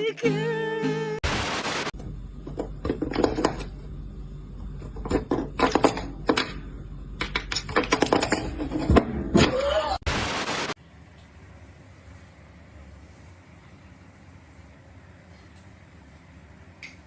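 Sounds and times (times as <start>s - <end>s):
low steady hum: 1.2s - 10.1s
clatter of sharp knocks and clicks: 7.2s - 9.0s.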